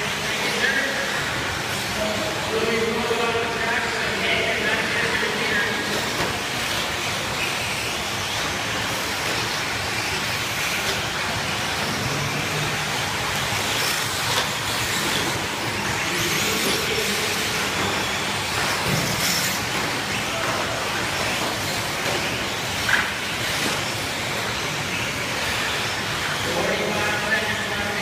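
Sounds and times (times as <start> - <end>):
rc truck motors whining: 5.8 - 20.0.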